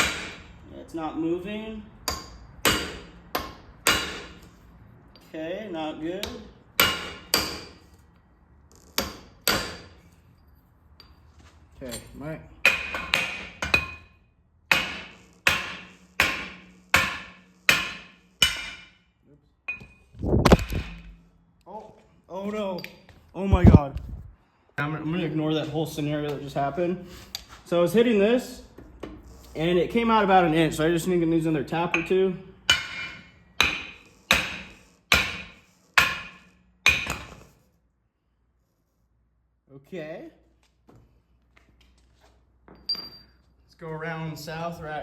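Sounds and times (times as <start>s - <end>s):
hammer striking metal: 0.0s - 0.5s, 2.0s - 4.5s, 6.2s - 7.8s, 9.0s - 10.0s, 12.6s - 19.1s, 19.7s - 21.4s, 31.9s - 37.4s.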